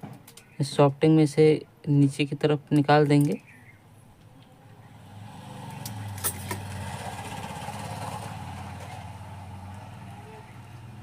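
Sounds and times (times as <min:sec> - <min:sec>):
engine running: 0:04.8 - 0:11.0.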